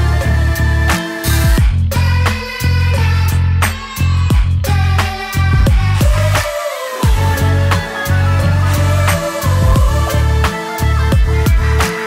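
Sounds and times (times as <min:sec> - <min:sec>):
electronic music with heavy bass: 0:00.0 - 0:12.0
falling bass sweep: 0:07.0 - 0:11.8.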